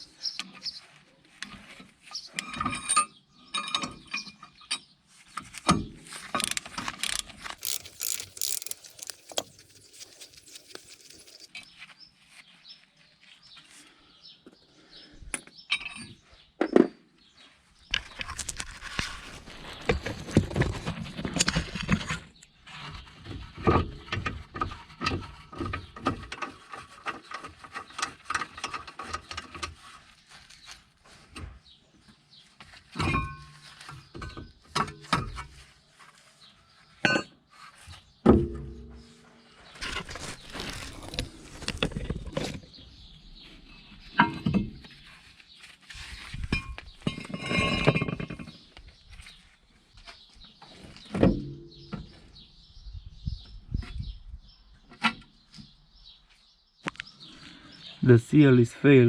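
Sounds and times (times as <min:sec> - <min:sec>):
metal parts clinking: 0:06.4 - 0:11.6
ratchet clicks: 0:06.4 - 0:11.6.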